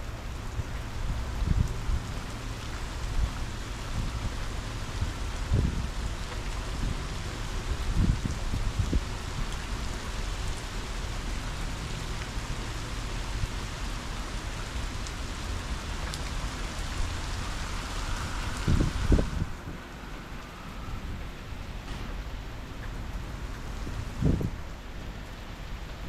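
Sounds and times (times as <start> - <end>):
heavy rain falling: 0.0 - 26.0
wind buffeting microphone: 0.4 - 11.6, 14.4 - 25.0.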